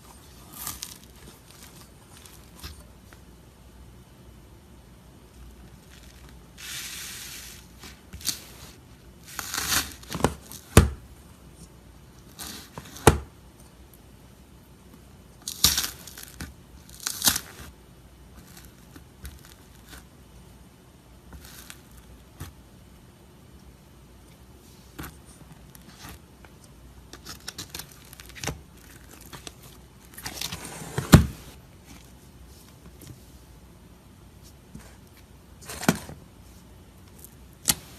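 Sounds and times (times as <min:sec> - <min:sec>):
slime crust crackling and tearing: 0:09.3 - 0:10.4, 0:15.4 - 0:17.7.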